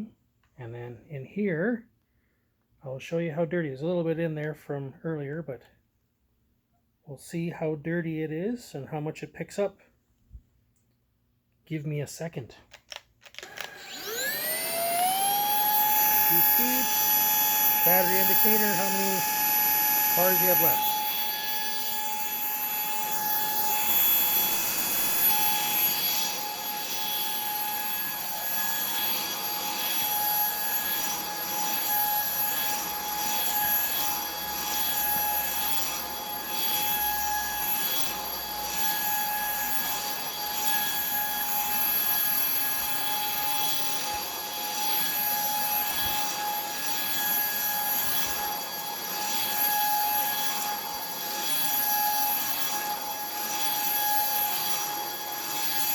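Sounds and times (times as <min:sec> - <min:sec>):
vacuum motor whine: 0:13.3 - 0:55.9.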